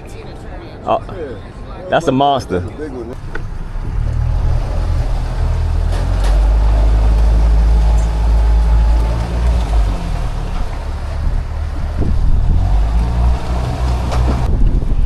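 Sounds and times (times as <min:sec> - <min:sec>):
low engine rumble: 0:02.7 - 0:15.0
wind noise: 0:03.2 - 0:15.0.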